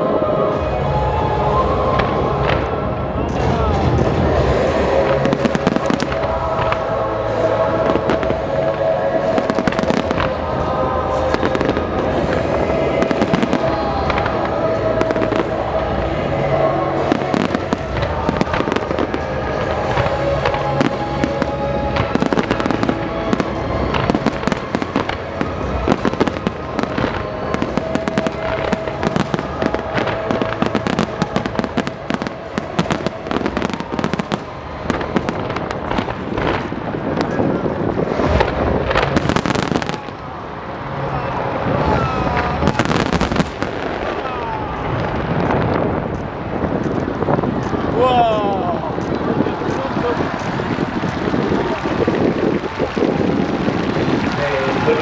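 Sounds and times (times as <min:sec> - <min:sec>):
fireworks bangs and crackles: 0:00.0 - 0:55.0
music: 0:00.0 - 0:55.0.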